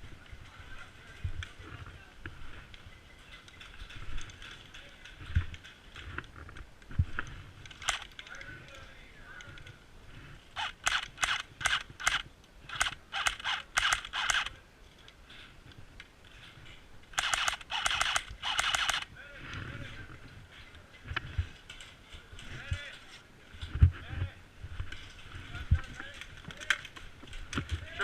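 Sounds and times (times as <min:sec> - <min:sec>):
airsoft guns firing: 0:10.6 - 0:14.6, 0:17.2 - 0:19.1.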